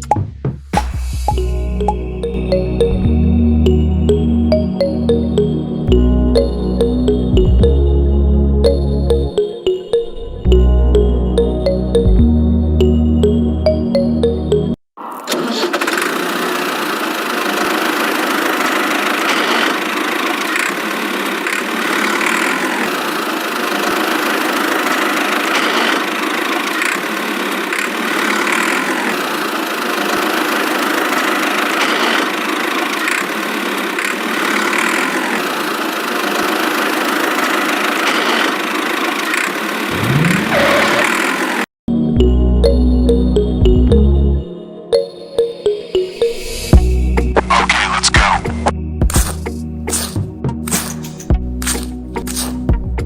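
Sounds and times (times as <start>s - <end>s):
small motor running: 15.8s - 41.7s
short rising whine: 39.9s - 41.4s.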